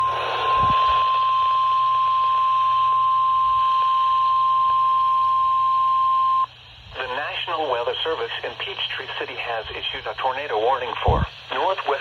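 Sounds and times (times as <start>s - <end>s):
steady high alarm tone: 0.0s - 6.5s
faint radio hiss: 6.4s - 12.0s.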